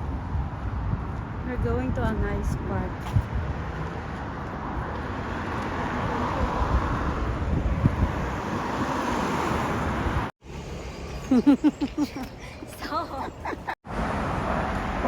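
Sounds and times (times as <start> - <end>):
road traffic noise: 0.0 - 15.0
vehicle passing by: 3.5 - 11.6.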